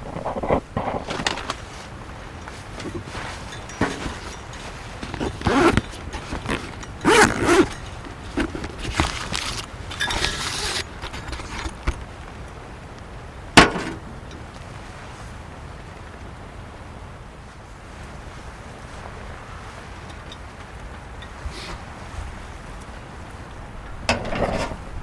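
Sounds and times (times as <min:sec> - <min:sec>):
rustling and handling noises: 0:00.0 - 0:12.6.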